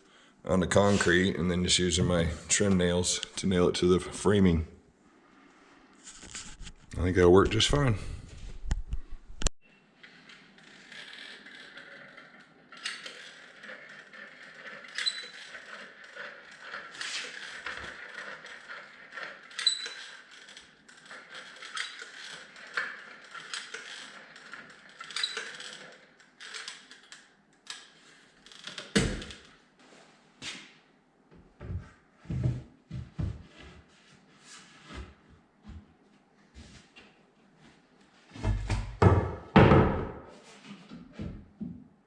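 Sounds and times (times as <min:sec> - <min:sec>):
hand tools creaking and clicking: 0:10.0 - 0:29.5.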